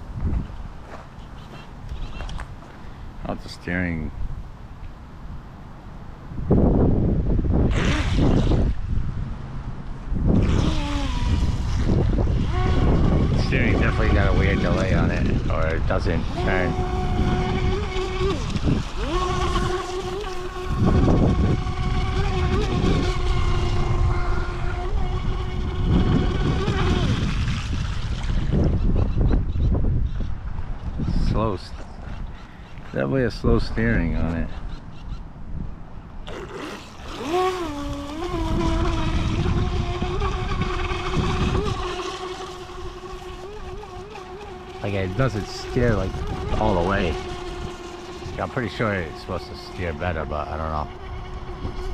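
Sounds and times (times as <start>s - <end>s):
high-pitched motor whine: 7.5s - 29.6s, 36.2s - 51.9s.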